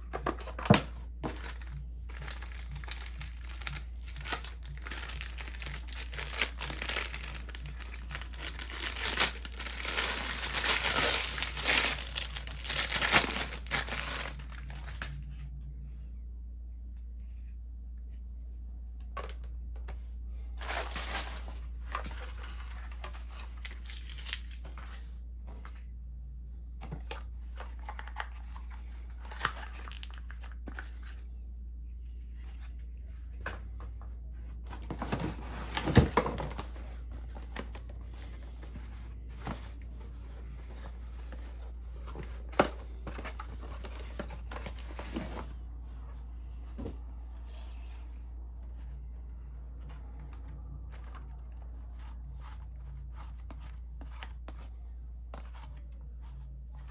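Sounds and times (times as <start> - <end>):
packaging crinkling and tearing: 0.6 - 15.2, 20.6 - 25.0, 29.2 - 30.6.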